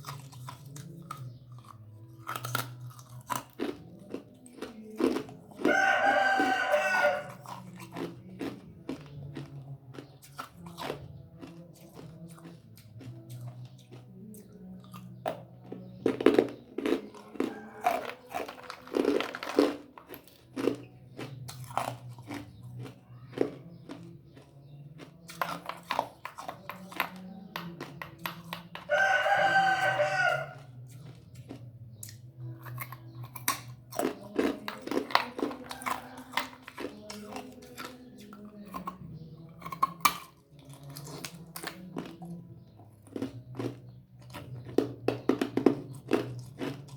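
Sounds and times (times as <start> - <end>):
ice crunched between teeth: 0.0 - 14.1, 15.7 - 39.0, 39.6 - 42.3, 43.0 - 46.9
rooster crowing: 5.6 - 7.4, 17.2 - 18.3, 28.9 - 30.7.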